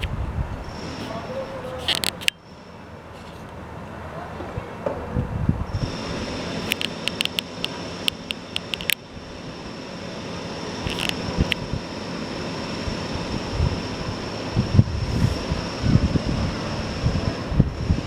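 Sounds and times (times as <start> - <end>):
vehicle road and wind noise: 0.0 - 18.0
sharp clicks: 0.8 - 2.4, 6.6 - 9.1, 10.8 - 11.7.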